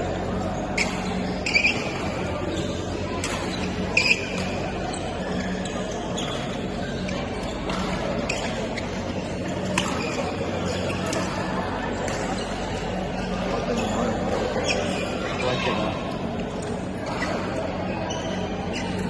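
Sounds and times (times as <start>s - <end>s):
rackets hitting shuttlecock: 3.2s - 4.5s, 9.6s - 10.3s.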